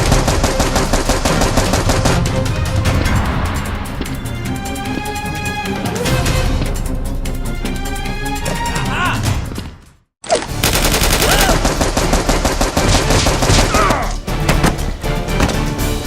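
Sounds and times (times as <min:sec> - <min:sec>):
rapid gunfire: 0:00.0 - 0:02.4, 0:10.6 - 0:14.8
action music: 0:00.0 - 0:16.0.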